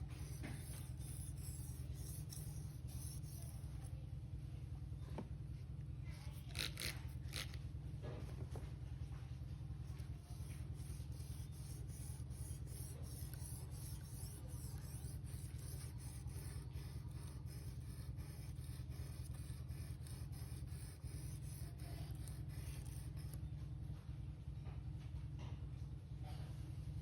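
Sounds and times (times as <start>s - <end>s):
knife scraping on sharpener: 0.2s - 3.5s, 6.4s - 7.6s.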